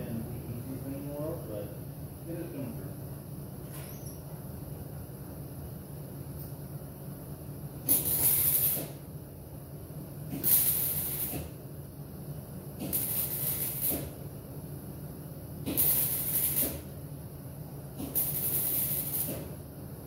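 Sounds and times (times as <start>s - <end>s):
steady low hum: 0.0s - 20.0s
welding arc hiss and crackle: 7.8s - 9.1s, 10.3s - 11.6s, 12.7s - 14.3s, 15.6s - 17.0s, 18.0s - 19.6s.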